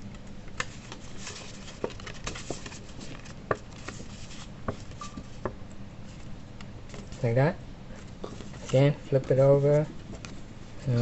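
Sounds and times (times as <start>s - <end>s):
cardstock rustling and crackling: 0.5s - 7.4s.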